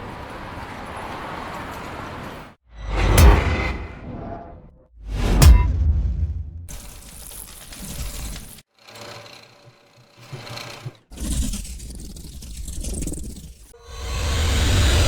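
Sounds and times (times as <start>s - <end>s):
dense noisy sound effect: 2.8s - 7.2s.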